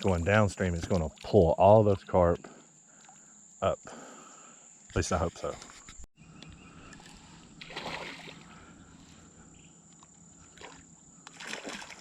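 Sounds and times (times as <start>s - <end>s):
high insect drone: 1.5s - 12.0s
flowing river water: 6.8s - 9.1s, 10.0s - 12.0s.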